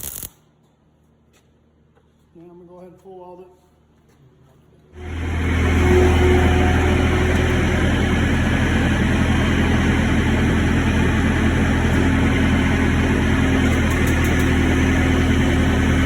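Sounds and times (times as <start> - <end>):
engine idling: 5.0 - 16.0.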